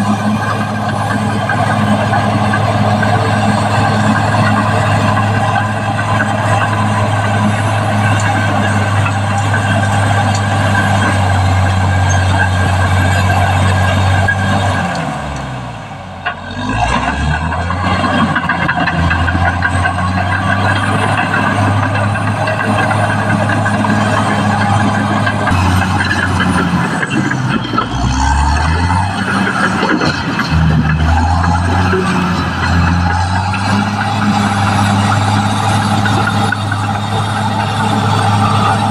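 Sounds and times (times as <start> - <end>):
bulldozer diesel engine running: 0.0 - 38.9.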